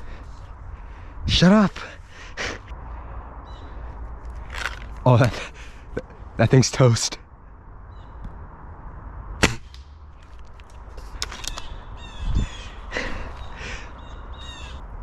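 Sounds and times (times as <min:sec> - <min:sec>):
sharp crack: 0:09.4 - 0:11.7
crows cawing: 0:11.4 - 0:14.8.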